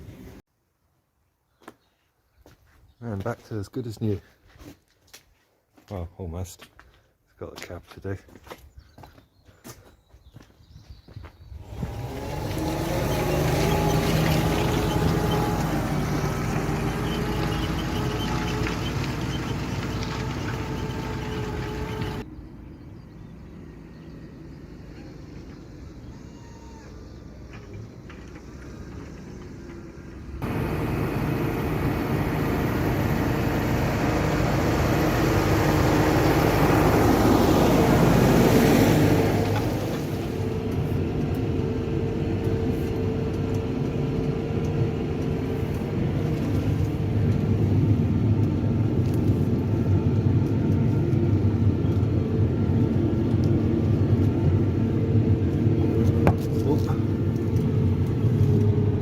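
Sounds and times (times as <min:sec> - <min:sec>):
tractor diesel engine: 0:00.0 - 0:00.4, 0:11.6 - 0:22.3, 0:27.2 - 0:59.0.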